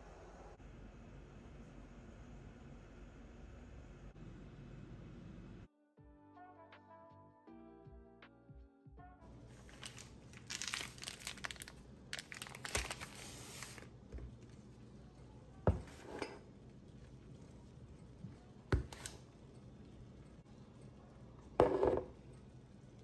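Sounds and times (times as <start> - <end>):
packaging crinkling: 9.5 - 13.9.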